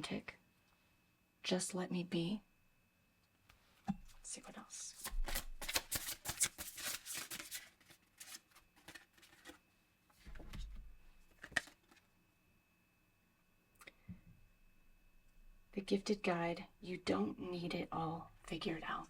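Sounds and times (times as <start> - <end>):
cards being shuffled: 4.9 - 9.6, 11.3 - 12.1.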